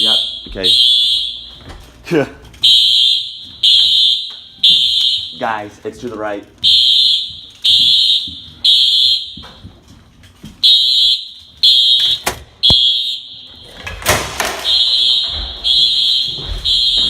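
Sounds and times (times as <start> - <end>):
fire alarm horn blasts: 0.0 - 1.9, 2.6 - 5.8, 6.6 - 9.8, 10.6 - 17.0.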